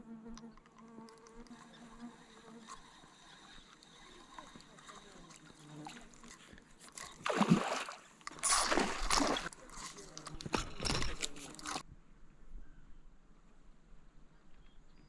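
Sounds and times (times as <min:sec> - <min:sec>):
water splashing and sloshing: 0:06.0 - 0:11.8.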